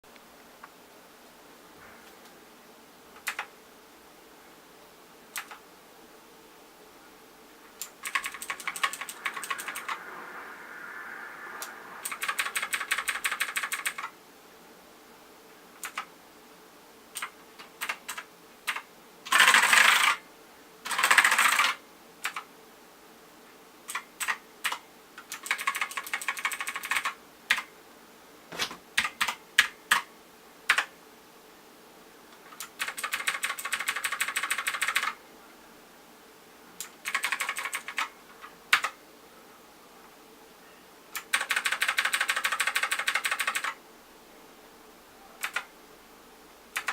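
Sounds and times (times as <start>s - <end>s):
mechanical keyboard typing: 3.2s - 3.5s, 7.9s - 10.0s, 12.0s - 14.1s, 15.8s - 16.1s, 17.2s - 20.2s, 20.9s - 22.5s, 23.9s - 27.7s, 29.0s - 30.1s, 30.7s - 30.9s, 32.6s - 35.2s, 36.8s - 38.1s, 38.7s - 39.0s, 41.2s - 43.8s, 45.4s - 45.7s
noisy rushes: 8.0s - 13.8s.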